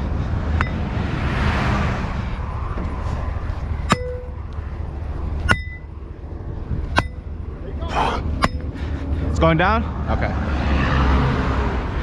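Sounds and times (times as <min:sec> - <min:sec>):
vehicle passing: 0:00.0 - 0:12.0
sledgehammer striking metal post: 0:03.8 - 0:04.4, 0:05.4 - 0:05.9, 0:06.9 - 0:07.2, 0:08.4 - 0:08.6.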